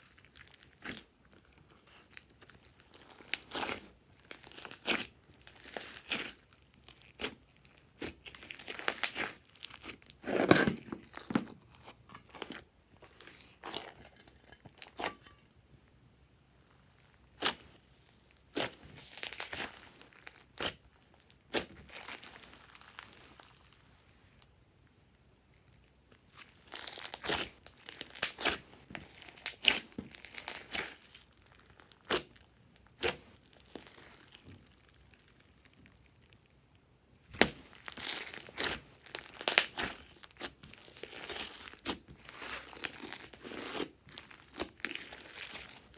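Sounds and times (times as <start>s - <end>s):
slime squished by hand: 1.8s - 10.5s, 18.5s - 20.9s, 21.5s - 23.9s, 26.3s - 32.4s, 33.0s - 36.2s, 37.3s - 45.9s.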